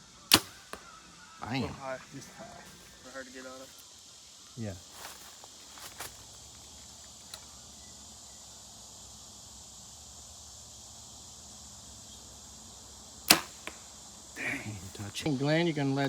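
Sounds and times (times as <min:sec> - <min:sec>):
insects buzzing: 0:00.0 - 0:16.0
arrow hitting target crack: 0:00.3 - 0:01.0, 0:13.3 - 0:14.0.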